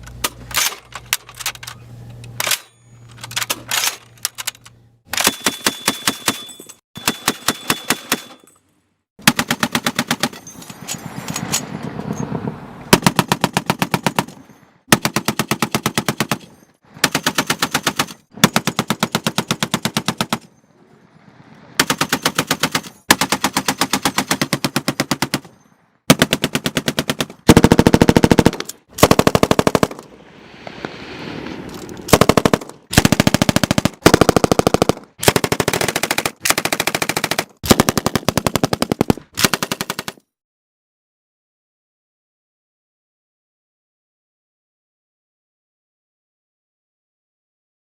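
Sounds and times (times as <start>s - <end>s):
machine-gun bursts: 5.1s - 8.4s, 13.0s - 20.5s, 26.1s - 30.0s, 32.1s - 40.2s.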